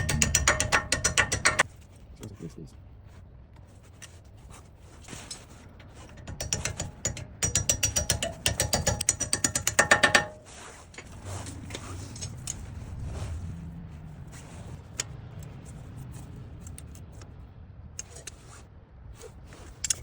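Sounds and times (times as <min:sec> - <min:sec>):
ratchet wrench clicking: 0:00.0 - 0:01.6, 0:06.1 - 0:10.4.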